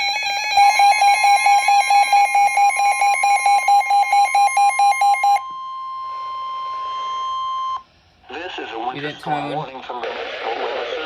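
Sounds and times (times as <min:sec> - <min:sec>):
steady high alert tone: 0:00.0 - 0:05.5.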